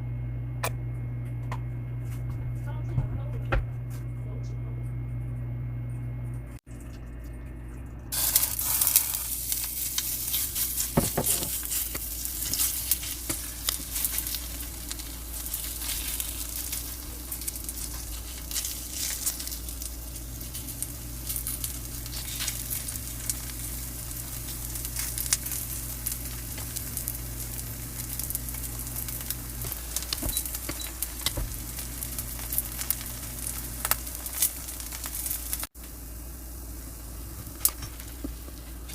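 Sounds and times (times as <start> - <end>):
batter sizzling in hot oil: 8.1 - 38.9.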